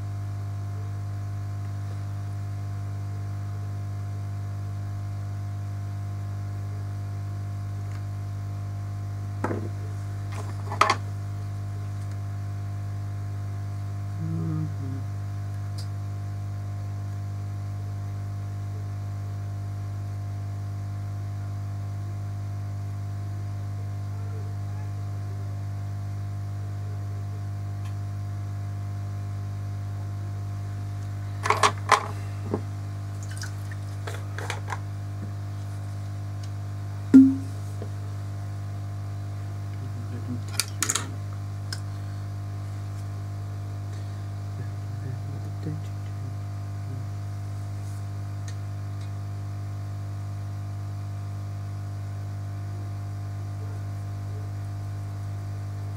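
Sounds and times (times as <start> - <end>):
low electrical hum: 0.0 - 55.9
short low blip: 37.1 - 37.6.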